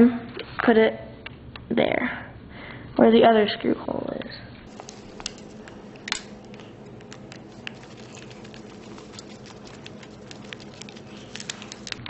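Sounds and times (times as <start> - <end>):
steady low hum: 3.9 - 12.0.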